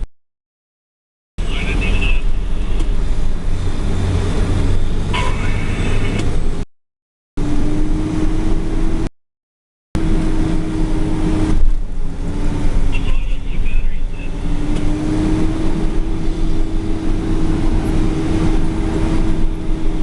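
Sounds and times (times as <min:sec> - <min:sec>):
heavy diesel machinery rumbling: 0:01.4 - 0:06.6, 0:10.0 - 0:20.0.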